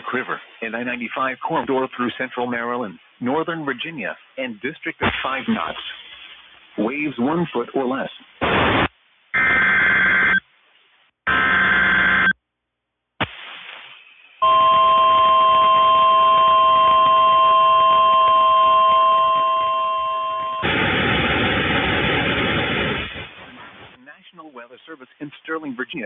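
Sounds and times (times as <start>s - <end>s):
radio hiss: 0.0s - 9.0s, 20.6s - 26.0s
steady warning alarm tone: 9.4s - 10.4s, 11.3s - 12.4s, 14.4s - 21.0s.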